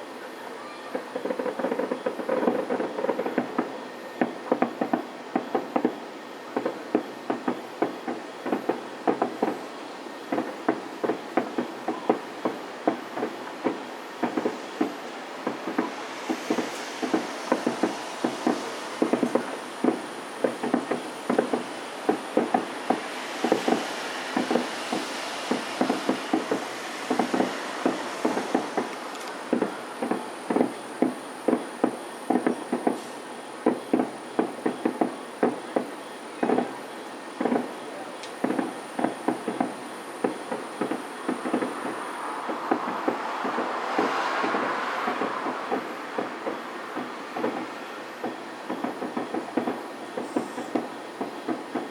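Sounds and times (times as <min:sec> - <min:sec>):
distant fireworks bursting: 0:00.0 - 0:51.9.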